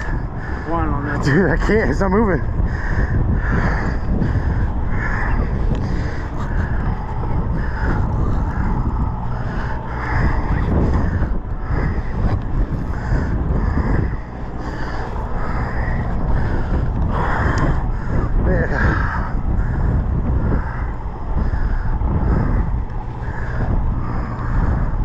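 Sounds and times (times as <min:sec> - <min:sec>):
boat engine rumbling: 0:00.0 - 0:25.0
wind noise on microphone: 0:00.0 - 0:25.0.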